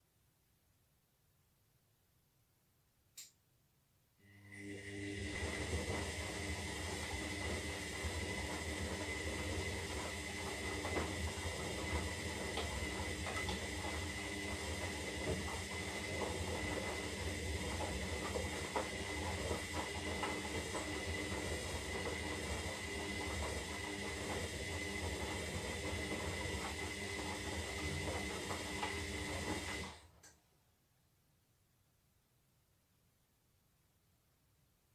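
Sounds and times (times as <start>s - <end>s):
washing machine running: 4.4s - 30.2s.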